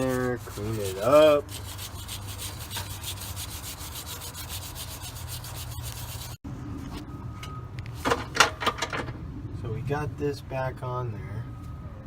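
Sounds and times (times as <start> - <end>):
wire brush scrubbing metal: 0.0 - 6.4.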